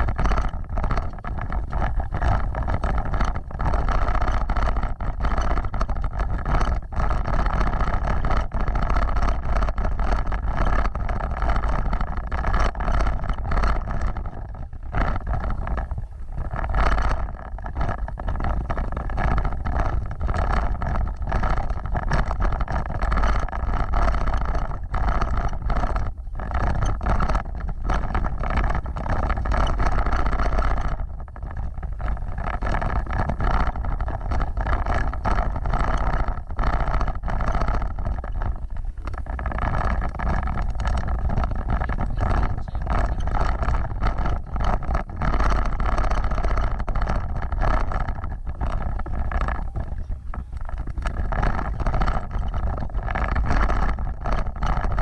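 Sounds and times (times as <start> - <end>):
vehicle engine rumble: 0.0 - 55.0
wind on microphone: 0.0 - 55.0.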